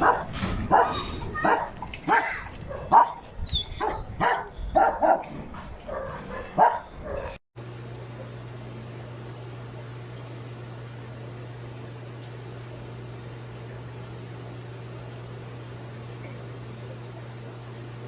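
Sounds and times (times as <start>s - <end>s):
dog barking: 0.0s - 7.4s.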